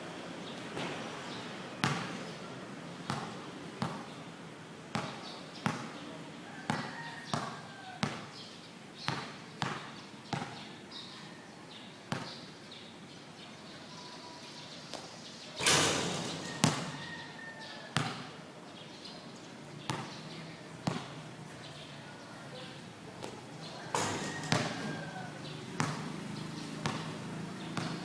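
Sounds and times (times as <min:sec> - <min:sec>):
basketball bouncing on floor: 0:01.8 - 0:02.2
sneaker squeaks: 0:14.9 - 0:17.4, 0:23.2 - 0:27.1.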